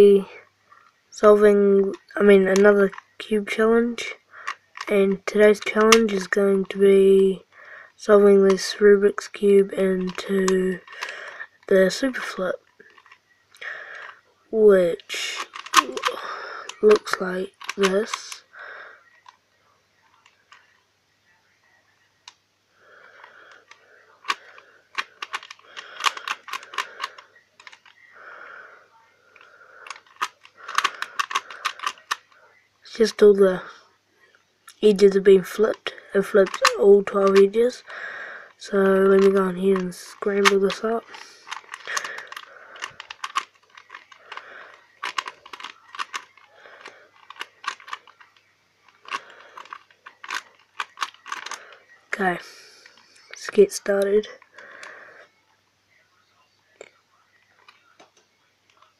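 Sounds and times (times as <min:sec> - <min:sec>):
plastic cube clicking: 0:02.0 - 0:03.6, 0:04.4 - 0:06.8, 0:08.3 - 0:14.1, 0:14.9 - 0:18.4, 0:23.2 - 0:28.0, 0:29.4 - 0:32.4, 0:34.7 - 0:52.3.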